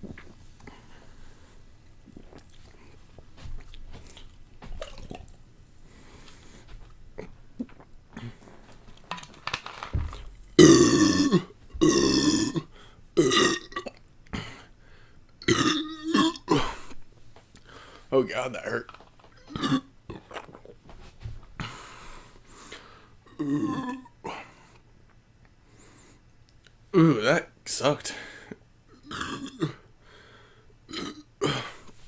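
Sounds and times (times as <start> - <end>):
soft breathing and mouth sounds: 0.0 - 9.0
man burping loudly: 10.6 - 14.6, 15.4 - 17.0, 19.4 - 20.4, 23.3 - 24.2, 29.0 - 29.8, 30.9 - 31.8.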